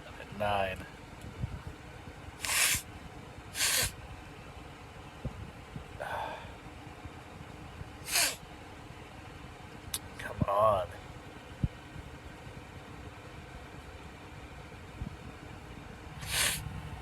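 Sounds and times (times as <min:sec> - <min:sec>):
man sniffing sharply: 0:02.4 - 0:02.8, 0:03.6 - 0:04.0, 0:08.1 - 0:08.4, 0:16.2 - 0:16.6.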